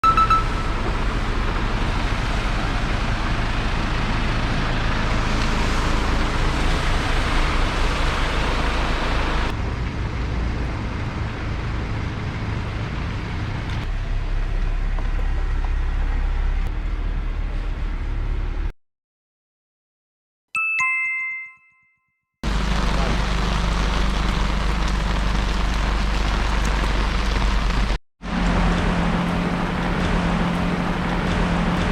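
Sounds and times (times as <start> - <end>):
wind: 0.0 - 18.7, 22.4 - 31.9
torrential rain: 0.4 - 9.6, 22.4 - 31.9.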